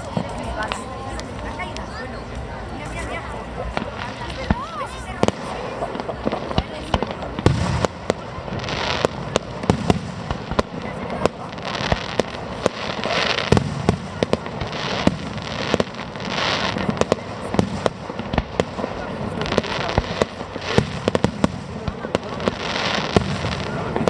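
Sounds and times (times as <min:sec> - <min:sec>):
hissy fireworks bursts: 0:00.0 - 0:24.0.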